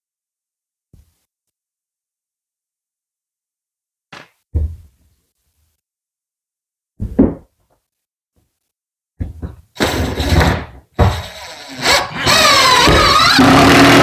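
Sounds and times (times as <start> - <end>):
wooden sheets knocking and thumping: 7.0 - 7.6, 9.2 - 9.8.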